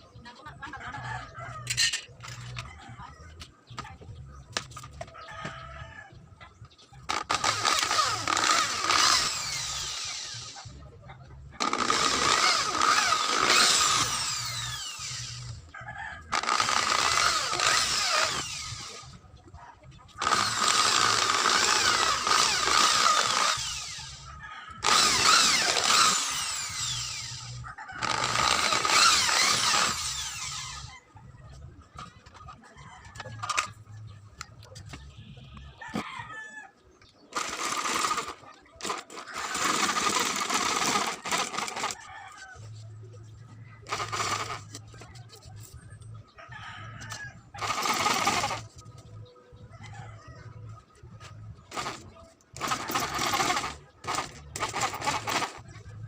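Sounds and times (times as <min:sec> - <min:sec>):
electric power tool whining: 0:07.0 - 0:10.8, 0:11.6 - 0:19.2, 0:20.2 - 0:30.9, 0:37.3 - 0:42.0, 0:43.8 - 0:45.0, 0:47.6 - 0:48.8, 0:51.7 - 0:55.9.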